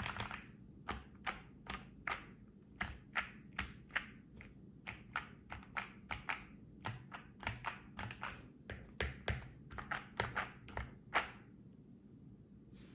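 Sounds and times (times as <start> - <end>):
mechanical keyboard typing: 0.0 - 11.4.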